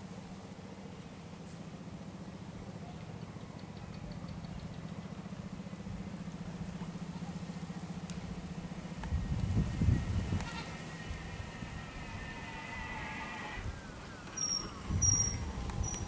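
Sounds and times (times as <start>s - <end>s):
low pulsing hum: 0.8s - 16.0s
animal bleat: 10.3s - 13.7s.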